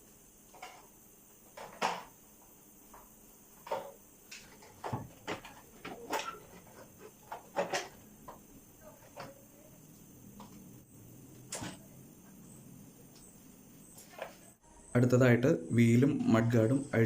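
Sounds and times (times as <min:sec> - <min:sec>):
tools and parts clattering: 0:03.6 - 0:09.5.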